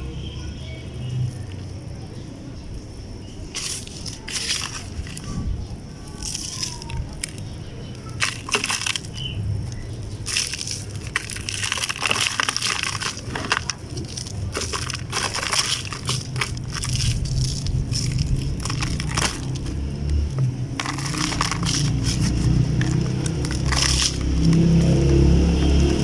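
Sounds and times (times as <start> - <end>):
damp material crunching: 3.5 - 26.0.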